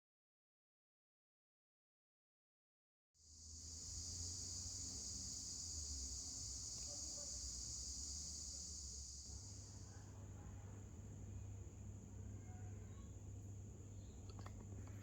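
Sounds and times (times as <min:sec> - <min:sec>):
high-pitched insect chorus: 0:03.2 - 0:11.7.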